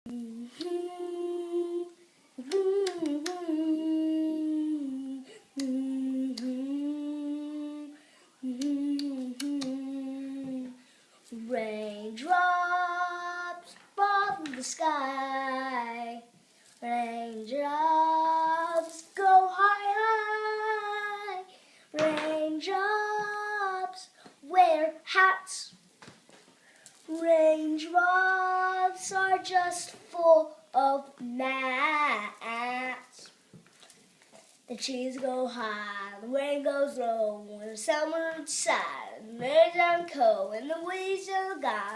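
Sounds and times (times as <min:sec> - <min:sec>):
young voice singing: 0:00.1 - 0:25.8, 0:27.0 - 0:33.4, 0:34.7 - 0:41.9
short breaths: 0:21.5 - 0:22.0.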